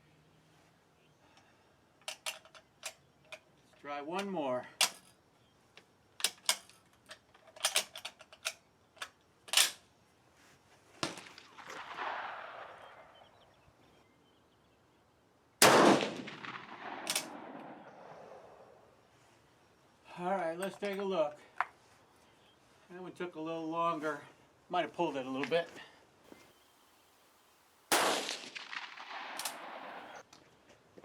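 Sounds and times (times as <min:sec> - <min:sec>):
rifle bolt metallic clicks: 0:02.0 - 0:03.5, 0:04.2 - 0:05.1, 0:06.2 - 0:09.8, 0:17.1 - 0:17.4, 0:28.0 - 0:30.2
weaker distant gunshot: 0:11.0 - 0:13.4, 0:15.6 - 0:18.6, 0:27.9 - 0:30.2
rifle shot echoing: 0:11.0 - 0:13.5, 0:15.6 - 0:18.8, 0:27.9 - 0:30.2.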